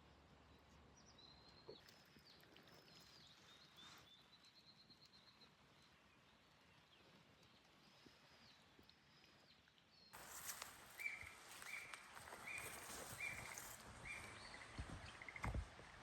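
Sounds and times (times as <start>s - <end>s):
distant bird song: 0.4s - 16.0s.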